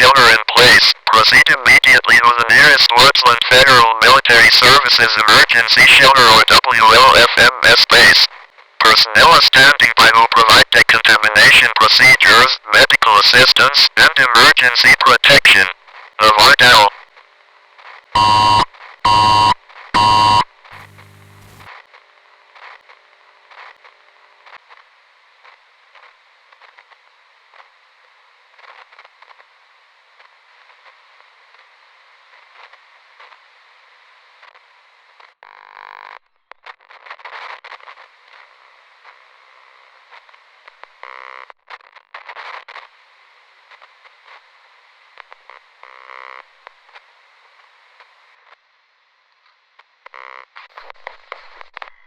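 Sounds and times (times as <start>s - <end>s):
crackling hissing radio static: 0.0s - 17.0s, 18.2s - 21.7s
short buzzing bursts: 18.2s - 21.7s.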